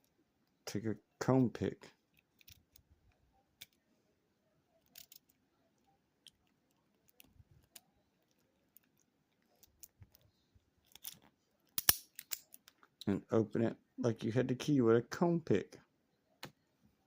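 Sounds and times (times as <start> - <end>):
lock pick clicking in padlock: 10.9 - 12.8.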